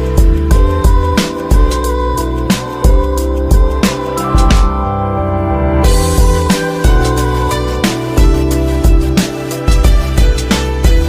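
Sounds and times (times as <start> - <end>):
instrumental music with deep bass: 0.0 - 11.0.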